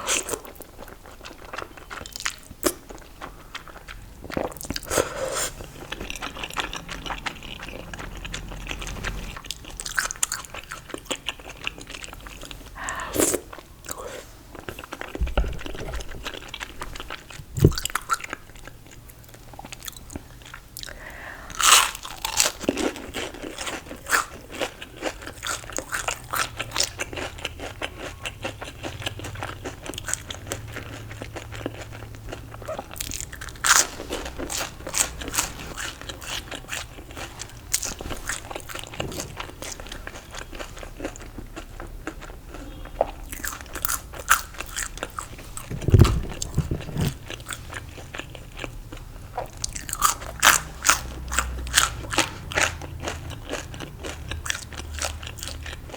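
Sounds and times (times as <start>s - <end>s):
crunchy food chewing: 0.0s - 55.9s
low thump: 45.7s - 46.9s.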